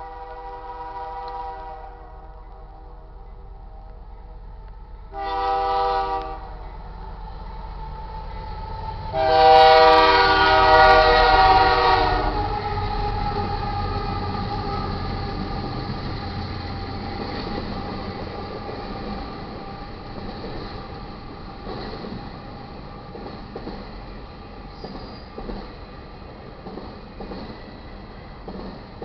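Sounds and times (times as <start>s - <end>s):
locomotive air horn blast: 0.0s - 2.3s, 5.1s - 6.6s, 8.6s - 15.1s
train passing rumble: 0.0s - 29.0s.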